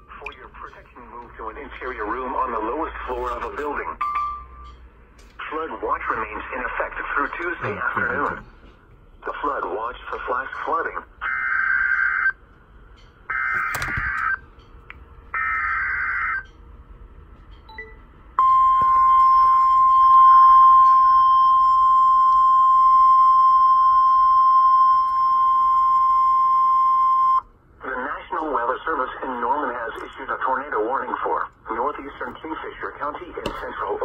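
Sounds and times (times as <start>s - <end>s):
steady alarm tone: 11.2s - 12.4s, 13.0s - 14.5s, 15.3s - 16.6s, 18.4s - 27.4s.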